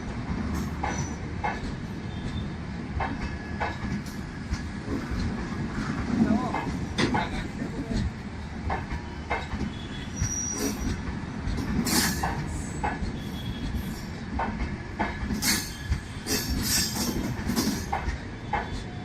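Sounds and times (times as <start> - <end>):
train rumbling past: 0.0 - 19.0
wheels clicking over rail joints: 3.0 - 18.9
high wheel squeals: 9.7 - 11.0.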